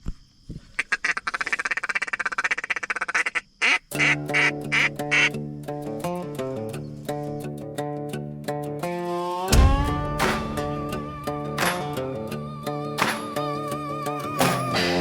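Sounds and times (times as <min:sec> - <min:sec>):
duck quacking: 0:00.8 - 0:05.3
acoustic guitar music: 0:03.9 - 0:15.0.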